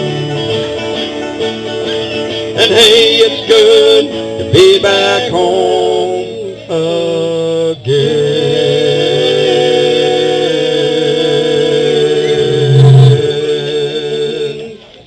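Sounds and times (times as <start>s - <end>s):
people singing: 2.6s - 14.8s
live band sustained chord: 12.2s - 13.8s.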